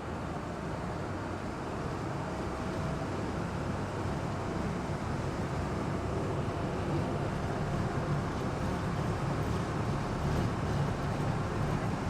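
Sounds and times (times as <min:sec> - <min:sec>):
wind: 0:00.0 - 0:12.0
boat engine low rumble: 0:00.4 - 0:12.0.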